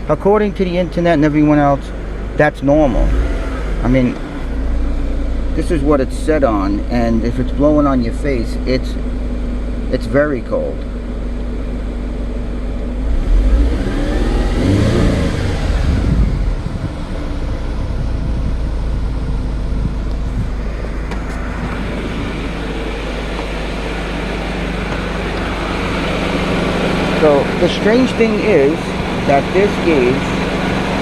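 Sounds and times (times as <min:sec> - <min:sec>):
car engine idling: 0:00.0 - 0:31.0
blower pushing air: 0:13.0 - 0:19.1, 0:19.7 - 0:31.0.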